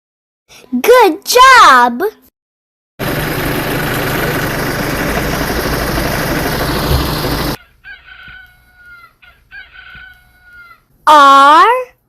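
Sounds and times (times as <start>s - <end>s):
loud rushing noise: 4.0s - 7.6s
toy rooster crowing: 7.6s - 10.9s.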